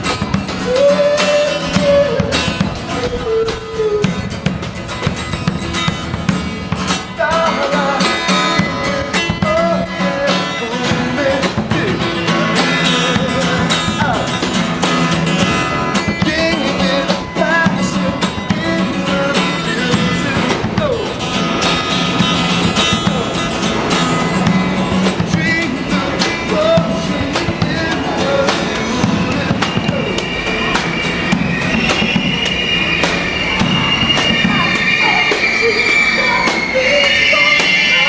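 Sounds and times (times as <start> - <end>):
steady percussion: 0.0 - 38.0
strummed guitar: 0.0 - 38.0
person singing: 7.1 - 14.3, 15.7 - 21.2.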